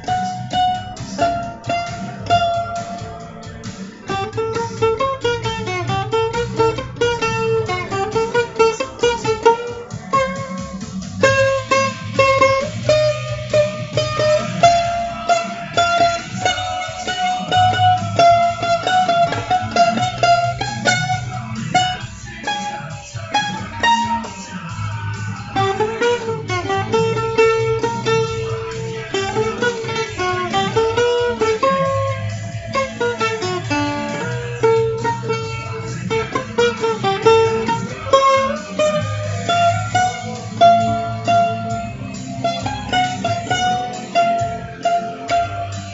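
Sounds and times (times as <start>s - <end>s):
guitar picking slow melody: 0.0s - 45.9s
held low bass: 0.0s - 45.9s.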